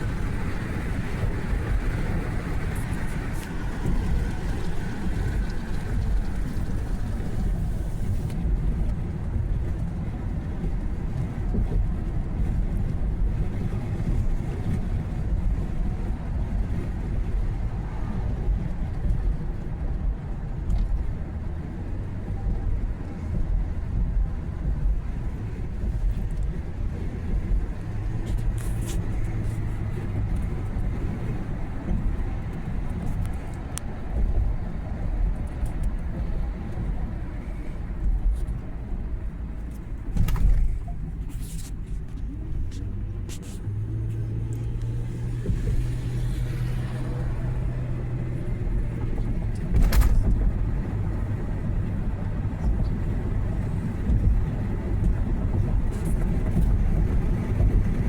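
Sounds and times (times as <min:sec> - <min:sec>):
road and engine rumble: 0:00.0 - 0:58.0.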